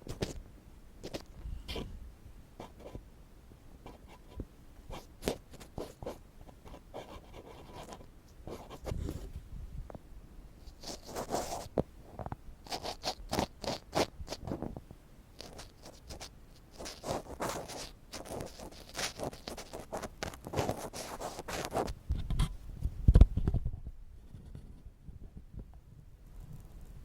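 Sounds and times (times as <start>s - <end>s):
ear pick scratching microphone: 3.9s - 9.6s, 10.7s - 14.8s, 15.4s - 24.9s.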